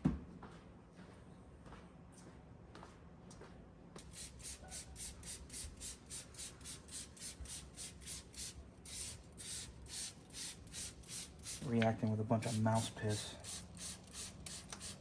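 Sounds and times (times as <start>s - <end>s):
spray bottle hissing bursts: 4.0s - 11.8s, 12.4s - 15.0s.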